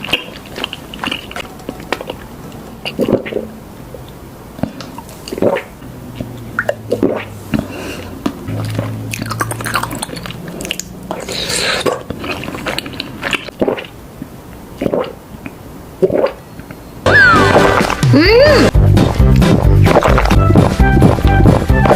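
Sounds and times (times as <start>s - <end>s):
person chewing tapioca pearls: 0.0s - 16.8s, 19.2s - 21.6s
wet mouth clicks: 0.0s - 16.8s.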